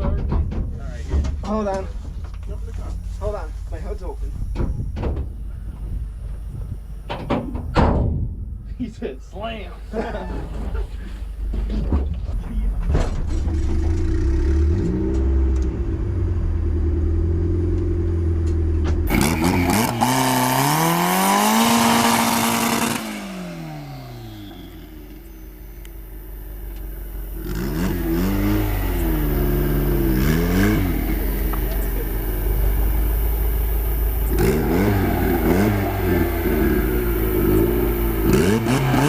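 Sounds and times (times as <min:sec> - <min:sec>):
car engines running: 0:00.0 - 0:39.0
engine revving: 0:12.8 - 0:39.0
car engine accelerating hard: 0:12.9 - 0:39.0.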